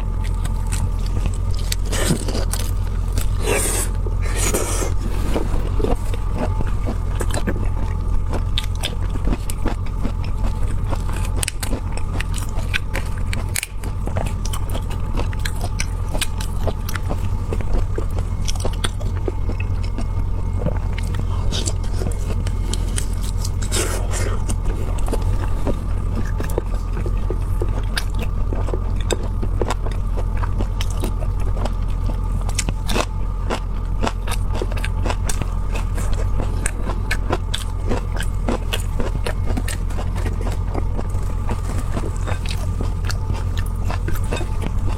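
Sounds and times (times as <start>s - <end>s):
chewing and biting shellfish: 0.0s - 44.9s
steady low hum: 0.0s - 44.9s.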